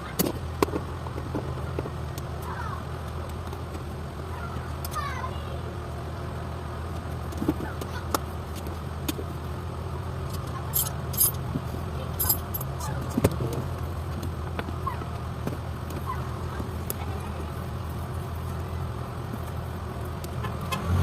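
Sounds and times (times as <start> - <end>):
metal jingle: 10.7 - 11.4, 12.2 - 12.8
metal tools clinking: 10.7 - 11.4, 12.1 - 12.8.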